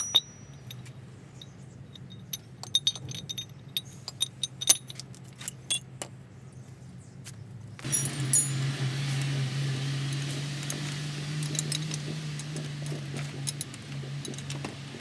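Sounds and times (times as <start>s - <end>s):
metal tools clinking: 0.0s - 6.0s, 7.8s - 9.4s, 10.1s - 15.0s
steady low hum: 7.8s - 15.0s.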